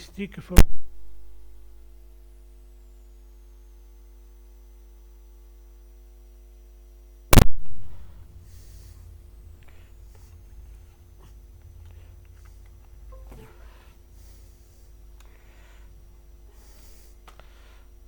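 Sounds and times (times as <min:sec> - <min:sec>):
electrical mains hum: 0:00.0 - 0:18.0.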